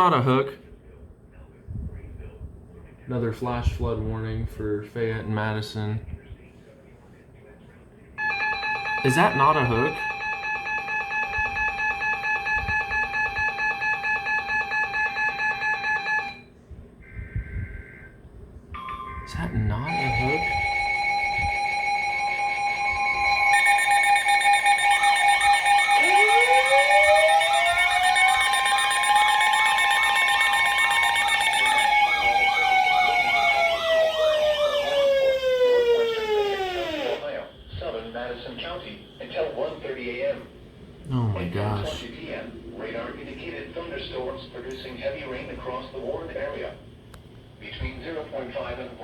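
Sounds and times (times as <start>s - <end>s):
shrill pulsing alert tone: 19.9s - 37.2s
warbling siren: 19.9s - 37.4s.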